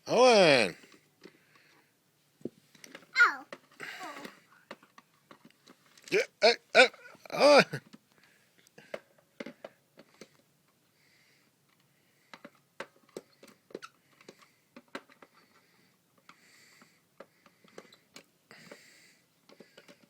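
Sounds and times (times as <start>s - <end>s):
faint clicks and taps: 19.4s - 20.0s.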